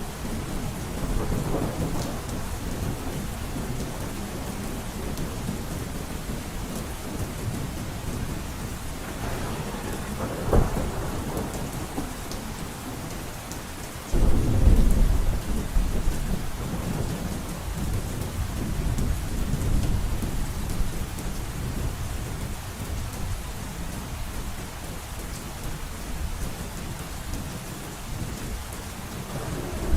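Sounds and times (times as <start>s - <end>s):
heavy rain on a roof: 0.0s - 29.9s
thunder rumbling: 0.1s - 6.4s, 9.0s - 12.7s, 14.1s - 21.0s, 29.1s - 29.9s
thunder clap: 9.0s - 12.2s, 14.1s - 18.0s, 29.2s - 29.9s.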